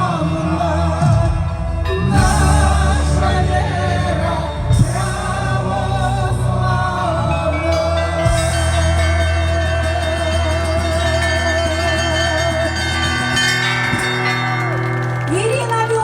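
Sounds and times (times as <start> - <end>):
church bells ringing: 7.6 - 16.0.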